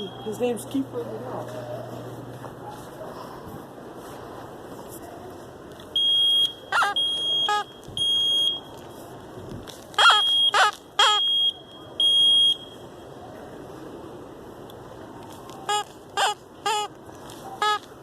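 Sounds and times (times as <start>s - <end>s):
smoke alarm beeping: 0.0s - 0.5s, 6.0s - 8.7s, 10.0s - 13.0s.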